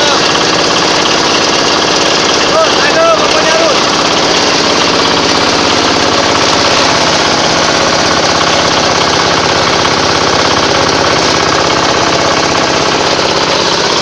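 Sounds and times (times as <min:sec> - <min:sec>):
compost grinder machine running: 0:00.0 - 0:14.0.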